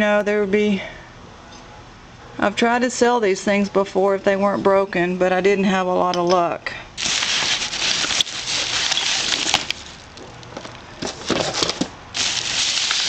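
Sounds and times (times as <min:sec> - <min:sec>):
rummaging through items: 0:07.0 - 0:13.0.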